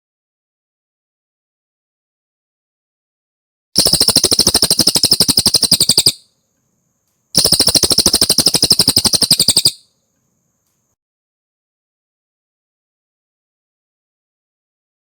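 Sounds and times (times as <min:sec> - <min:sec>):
bird trilling: 0:03.8 - 0:06.2, 0:07.4 - 0:09.9.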